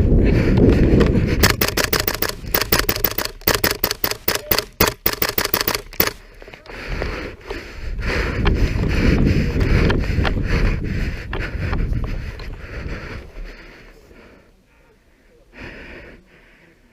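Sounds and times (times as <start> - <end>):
airsoft gun firing rapid shots: 1.4 - 6.2.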